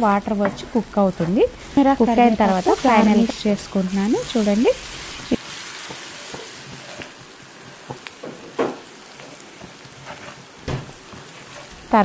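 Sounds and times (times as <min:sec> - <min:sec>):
vegetables sizzling in oil: 0:00.0 - 0:12.0
spoon scraping and knocking pan: 0:00.3 - 0:03.4, 0:05.8 - 0:11.9.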